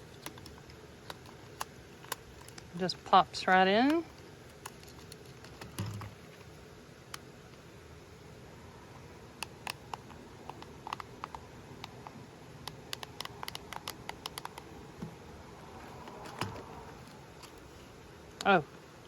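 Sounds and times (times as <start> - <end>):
plastic parts clicking and snapping: 0.0 - 2.8, 3.8 - 6.5, 9.4 - 15.1, 16.0 - 17.7.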